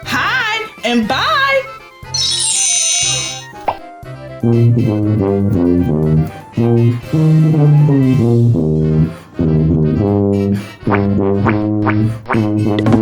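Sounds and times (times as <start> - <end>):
jazzy brass music: 4.1 - 13.0.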